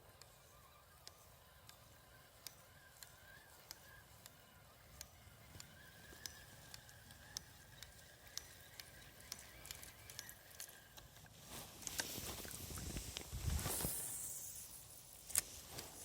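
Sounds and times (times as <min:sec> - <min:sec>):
small clicks: 0:00.0 - 0:14.6, 0:15.2 - 0:16.0
thin steady whine: 0:00.0 - 0:16.0
rustling through vegetation: 0:09.5 - 0:16.0.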